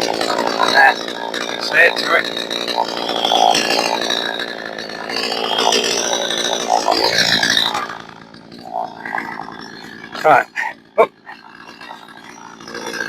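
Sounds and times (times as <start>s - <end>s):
chainsaw cutting through log: 0.0s - 13.0s.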